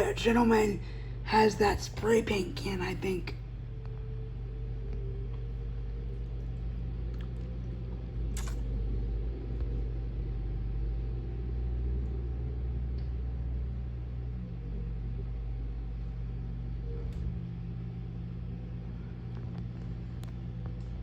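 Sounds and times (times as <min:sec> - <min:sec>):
engine idling rumble: 0:00.0 - 0:21.0
sharp click: 0:08.4 - 0:08.6.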